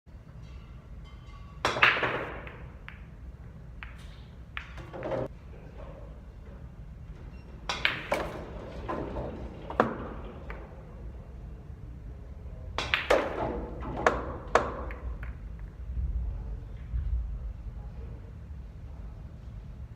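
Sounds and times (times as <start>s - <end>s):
pool balls clacking: 1.2s - 3.2s, 3.8s - 5.3s, 7.6s - 11.2s, 12.7s - 15.4s
balls rolling: 3.8s - 5.3s, 7.6s - 11.2s, 12.7s - 15.8s.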